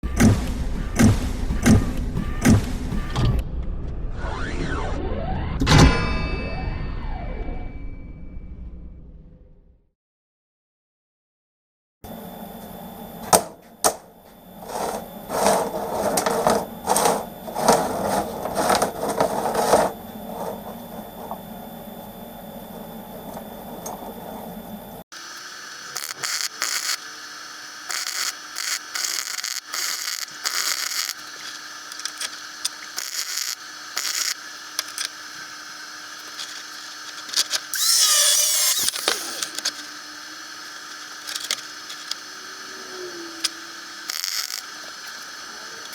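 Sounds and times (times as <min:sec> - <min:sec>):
small power tool whirring: 0:25.1 - 0:45.9.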